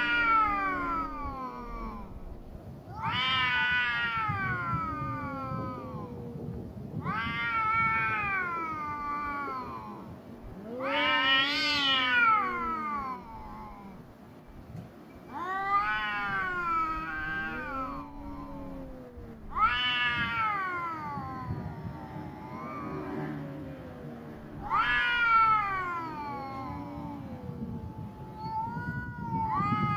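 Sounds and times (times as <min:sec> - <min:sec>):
cats yowling: 0:00.0 - 0:14.1, 0:15.3 - 0:29.9
lower slower cat yowl: 0:00.0 - 0:14.1, 0:15.3 - 0:29.9.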